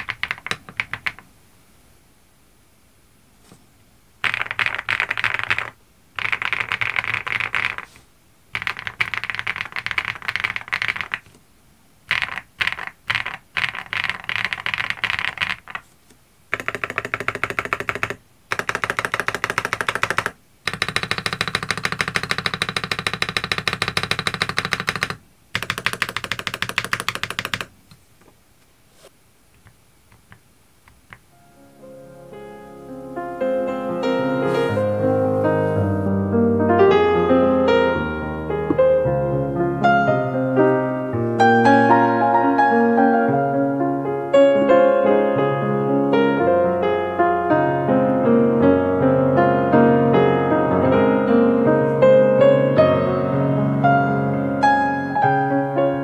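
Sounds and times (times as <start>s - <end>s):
mechanical keyboard typing: 0.0s - 1.3s, 4.2s - 11.4s, 12.1s - 28.0s.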